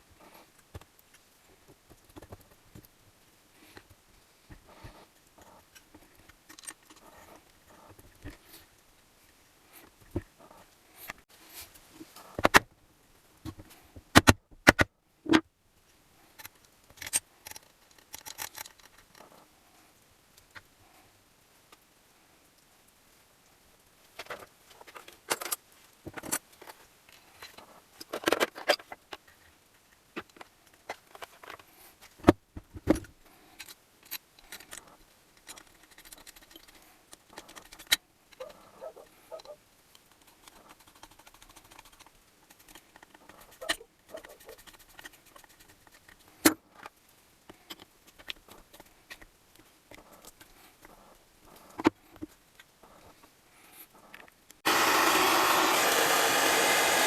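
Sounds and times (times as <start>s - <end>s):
metal parts and tools clinking: 16.4s - 19.3s, 33.6s - 38.5s.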